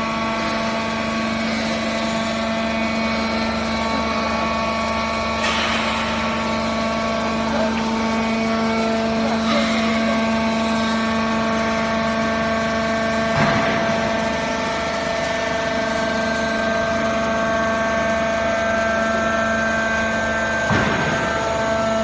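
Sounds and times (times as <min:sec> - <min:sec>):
baling press machine hum: 0:00.0 - 0:22.0
motor and pump whine: 0:00.0 - 0:22.0.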